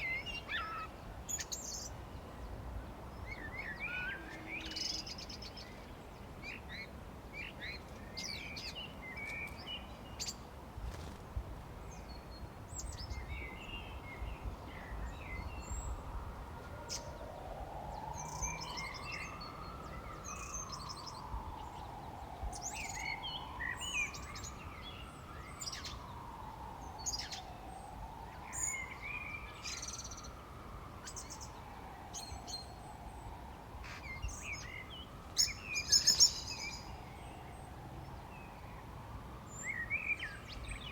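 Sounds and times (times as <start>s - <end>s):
birds chirping and trilling: 33.8s - 37.6s.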